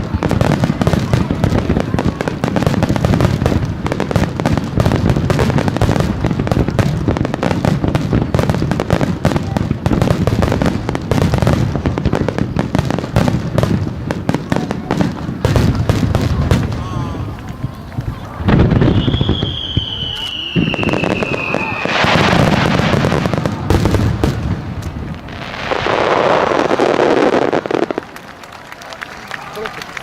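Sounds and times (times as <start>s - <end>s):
fireworks bursting: 0.0s - 29.7s
fireworks crackling: 0.0s - 30.0s.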